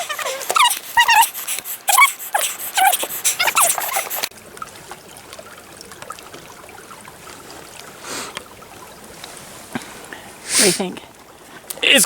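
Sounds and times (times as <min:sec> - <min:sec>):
high wavering squeaks: 0:00.0 - 0:04.2
running water: 0:00.0 - 0:12.0.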